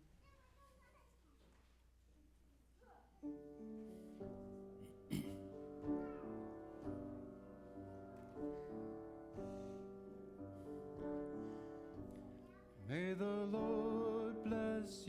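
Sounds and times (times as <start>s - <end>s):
piano playing slow chords: 3.2s - 15.0s.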